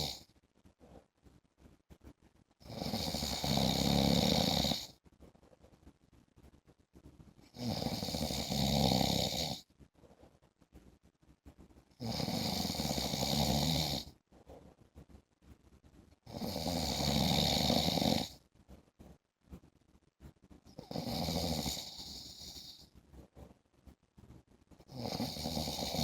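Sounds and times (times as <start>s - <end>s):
man snoring with low rattle: 0.0s - 0.2s, 2.6s - 5.0s, 7.5s - 9.6s, 12.0s - 14.2s, 16.3s - 18.4s, 20.8s - 22.8s, 24.9s - 26.0s.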